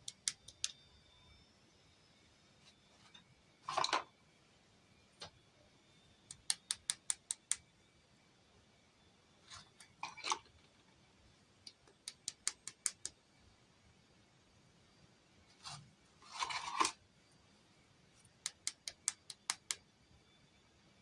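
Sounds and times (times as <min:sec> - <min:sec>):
small sharp clicks: 0:00.0 - 0:00.8, 0:06.3 - 0:07.6, 0:11.6 - 0:13.2, 0:18.2 - 0:19.8.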